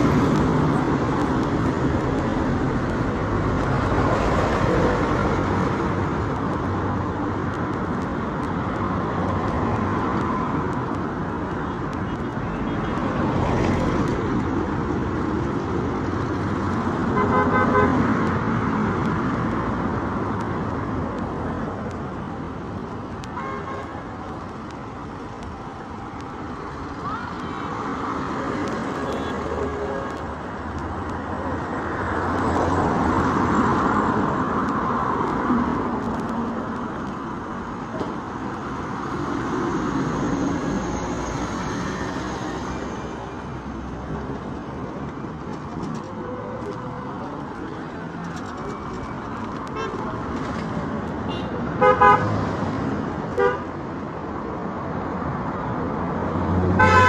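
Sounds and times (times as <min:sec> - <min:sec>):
vehicles passing: 0:00.0 - 0:57.0
car horn toot: 0:51.3 - 0:52.2, 0:56.8 - 0:57.0.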